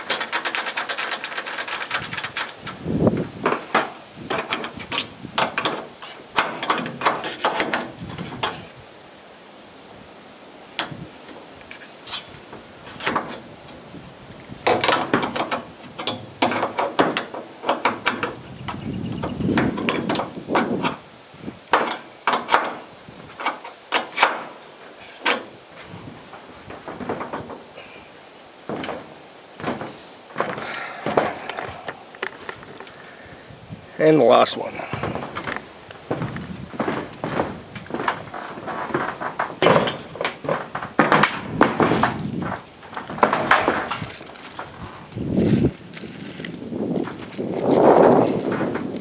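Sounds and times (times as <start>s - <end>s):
scraping rattle: 0.0s - 2.8s, 34.9s - 49.0s
metal rails clattering and clicking: 0.0s - 8.7s, 10.8s - 13.8s, 14.4s - 21.0s, 21.7s - 33.0s, 34.7s - 49.0s.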